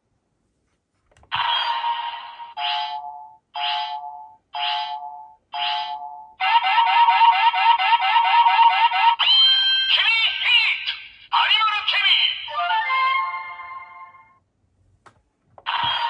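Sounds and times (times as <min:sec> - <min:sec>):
electronic toy sound effects: 0:05.6 - 0:13.6, 0:15.6 - 0:16.0.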